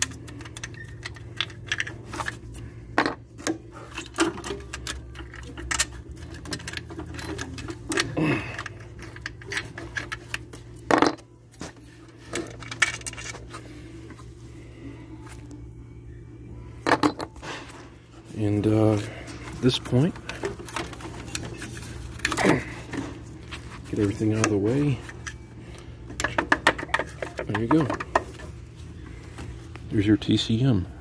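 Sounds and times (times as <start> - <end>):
metal bolts and tools clinking: 0.0 - 2.4, 3.0 - 11.3, 12.2 - 13.4, 16.9 - 17.8, 26.1 - 28.5
steady low hum: 0.0 - 31.0.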